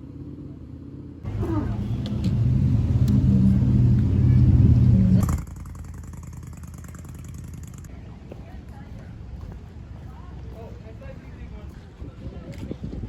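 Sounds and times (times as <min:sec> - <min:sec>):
vehicle engine running: 0:01.2 - 0:08.0.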